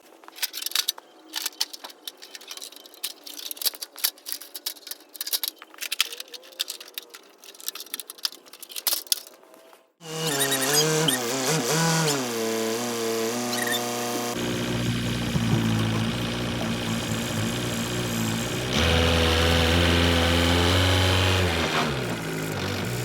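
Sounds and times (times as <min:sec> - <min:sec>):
hard objects clicking and rattling: 0:00.0 - 0:09.5, 0:14.4 - 0:19.2.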